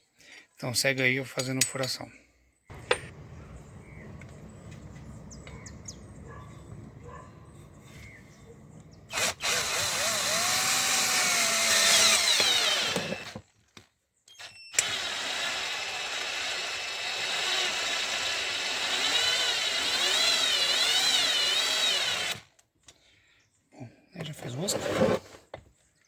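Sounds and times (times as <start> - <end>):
electric drill boring into metal: 2.7 - 13.4, 14.4 - 22.4.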